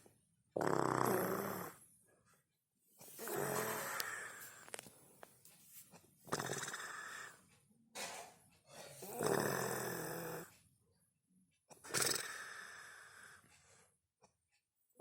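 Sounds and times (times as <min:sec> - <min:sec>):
woman snoring: 0:00.6 - 0:01.8, 0:03.2 - 0:04.5, 0:06.3 - 0:07.4, 0:09.0 - 0:10.5, 0:11.9 - 0:13.4.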